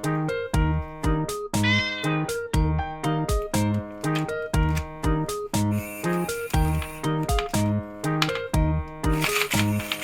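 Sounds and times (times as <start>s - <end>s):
background music with steady beat: 0.0s - 10.0s
cat meowing: 1.6s - 2.3s.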